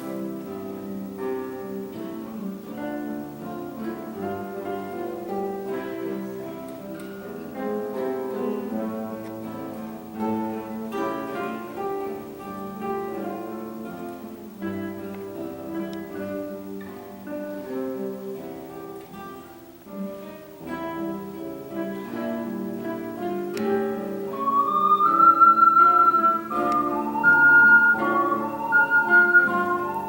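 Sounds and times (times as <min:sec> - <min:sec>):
plucked guitar: 0:00.0 - 0:30.0.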